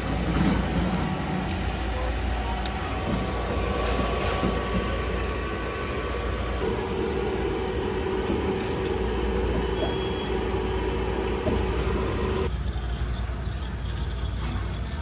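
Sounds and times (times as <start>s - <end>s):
machine hum with low rumble: 0.0s - 15.0s.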